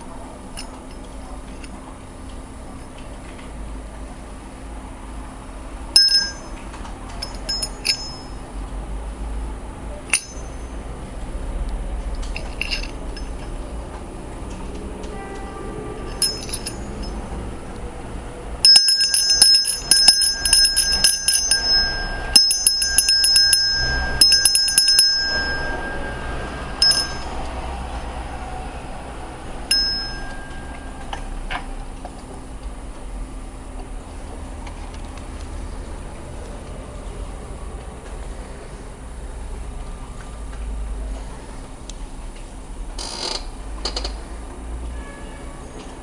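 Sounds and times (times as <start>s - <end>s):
hand bell ringing: 6.0s - 6.6s, 7.2s - 8.4s, 10.1s - 10.8s, 16.1s - 17.4s, 18.6s - 28.0s, 29.7s - 31.2s.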